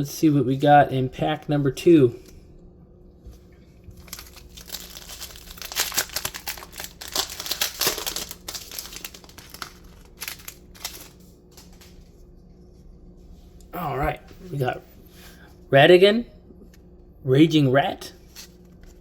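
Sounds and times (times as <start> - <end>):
card pack wrapper crinkling: 3.9 - 12.0.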